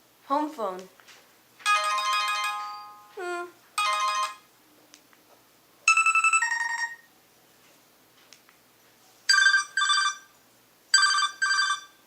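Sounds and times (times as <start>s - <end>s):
phone ringtone chimes: 1.7s - 3.2s, 3.8s - 4.4s, 5.9s - 7.1s, 9.3s - 10.3s, 11.0s - 12.0s
warbling two-tone phone ring: 5.9s - 7.1s, 9.3s - 10.3s, 11.0s - 12.0s.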